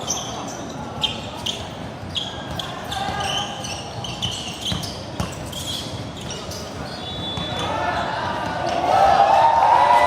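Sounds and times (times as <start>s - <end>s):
sneakers squeaking on hardwood: 0.0s - 8.7s
basketball bouncing: 3.9s - 7.6s.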